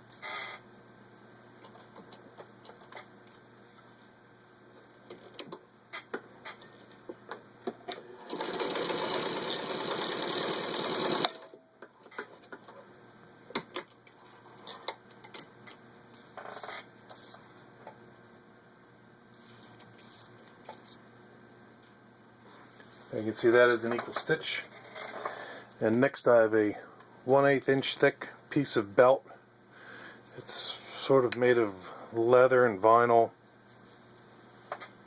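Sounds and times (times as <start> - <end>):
sewing machine stitching: 8.1 - 11.4.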